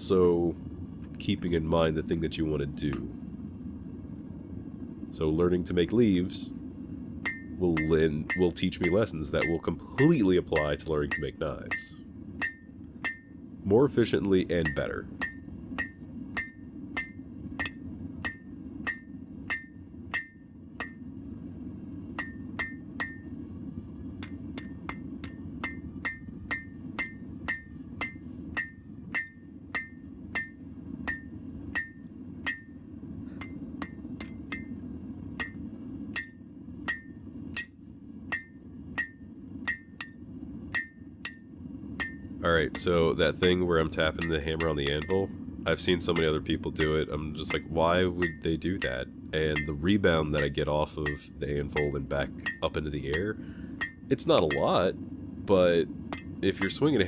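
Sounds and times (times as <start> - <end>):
forge burner roar: 0.0 - 57.0
hammer ringing on anvil: 7.2 - 13.4, 14.6 - 21.0, 22.2 - 23.3, 24.2 - 34.8, 35.4 - 43.6, 44.2 - 45.3, 46.1 - 55.0, 56.1 - 56.9.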